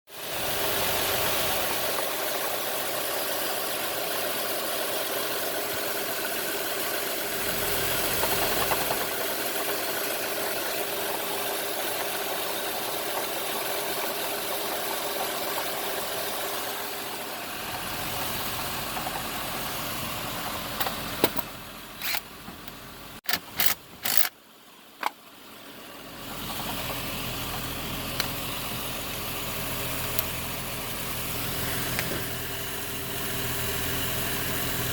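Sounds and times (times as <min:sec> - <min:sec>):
sharp clicks: 0:22.0 - 0:22.3, 0:23.2 - 0:24.3.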